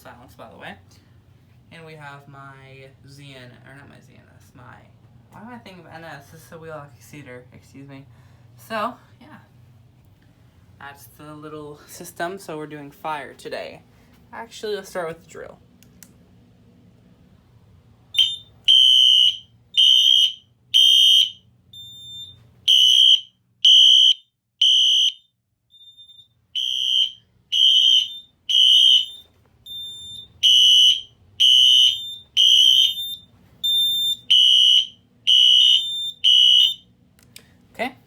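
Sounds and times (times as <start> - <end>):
fire alarm horn beeps: 18.1 - 36.9.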